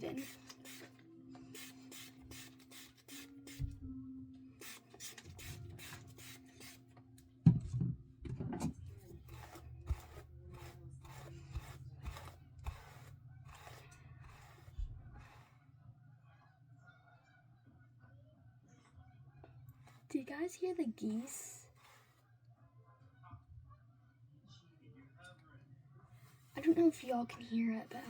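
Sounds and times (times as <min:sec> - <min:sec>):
hairbrush rasping through hair: 0:00.0 - 0:03.8, 0:04.6 - 0:06.8, 0:09.1 - 0:15.5, 0:19.9 - 0:22.2, 0:26.3 - 0:28.0.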